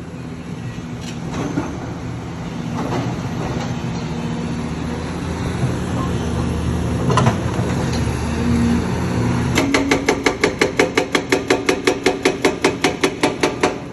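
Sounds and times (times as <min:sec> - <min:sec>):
excavator diesel engine running: 0:00.0 - 0:13.9
hydraulic breaker hammering rock: 0:09.6 - 0:13.9.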